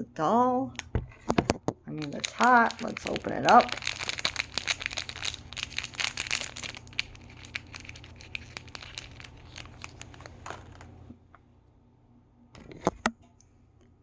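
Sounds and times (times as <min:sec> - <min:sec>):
plastic packaging crinkling: 0:01.9 - 0:11.1.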